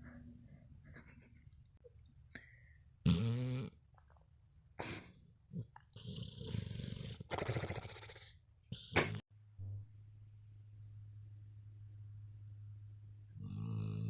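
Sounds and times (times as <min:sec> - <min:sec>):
dog snoring: 0:03.0 - 0:03.8, 0:06.0 - 0:09.2, 0:13.4 - 0:14.0.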